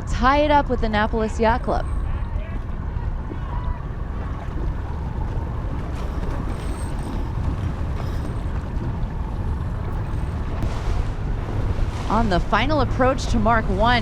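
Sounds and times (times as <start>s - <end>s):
water noise: 0.0s - 14.0s
wind rumble on microphone: 0.0s - 14.0s.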